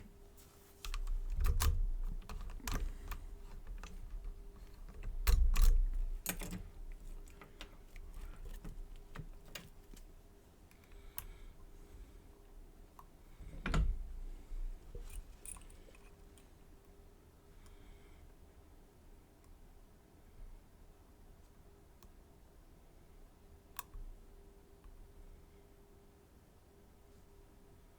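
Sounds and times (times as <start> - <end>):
padlock and lockpicks clicking: 0.9 - 7.7.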